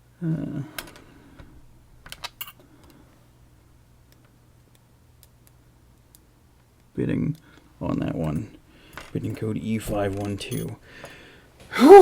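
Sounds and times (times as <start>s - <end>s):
man's voice murmuring: 0.2s - 0.7s
small metal lock parts clicking: 2.0s - 2.6s, 7.9s - 10.8s.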